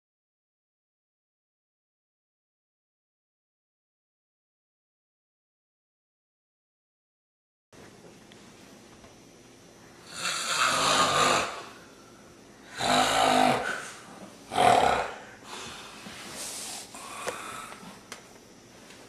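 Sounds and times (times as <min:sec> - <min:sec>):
person snoring: 0:10.0 - 0:11.9, 0:12.6 - 0:18.0.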